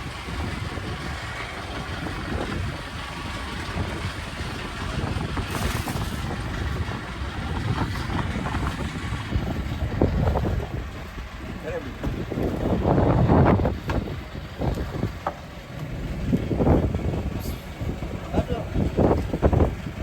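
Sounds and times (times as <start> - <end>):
boat engine low rumble: 0.0 - 20.0
wind and water noise: 0.0 - 20.0.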